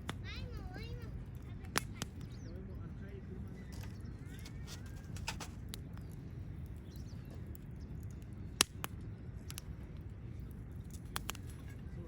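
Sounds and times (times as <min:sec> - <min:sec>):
sharp pops of fire: 0:00.0 - 0:00.4, 0:01.4 - 0:02.4, 0:05.0 - 0:10.1, 0:10.8 - 0:11.7
wood fire crackling: 0:00.0 - 0:12.0.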